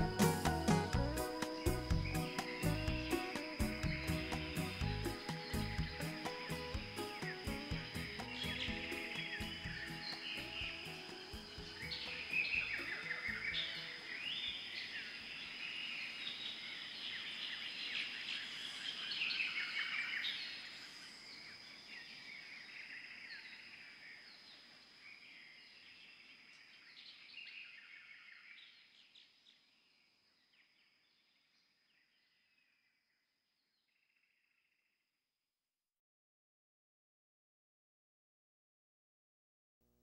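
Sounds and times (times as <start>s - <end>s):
high chirping calls: 0.0s - 15.1s.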